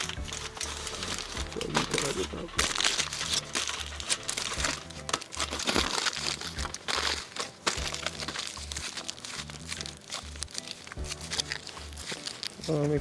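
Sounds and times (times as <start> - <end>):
background music with bass line: 0.0 - 7.2
aluminium foil crinkling: 0.0 - 13.0.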